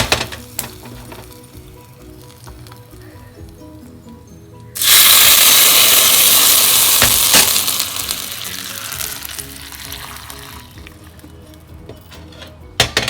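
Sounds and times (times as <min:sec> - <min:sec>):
hot oil sizzling: 0:00.0 - 0:03.7, 0:04.8 - 0:11.3.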